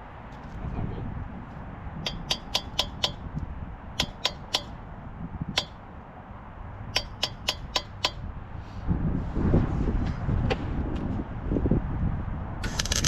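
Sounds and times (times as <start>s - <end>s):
hammer tapping on steel: 2.0s - 3.3s, 4.0s - 4.8s, 5.6s - 5.8s, 6.9s - 8.2s.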